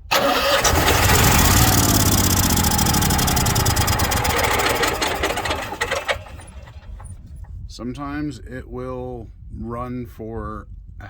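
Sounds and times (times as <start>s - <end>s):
generator starter cranking: 0.0s - 7.2s.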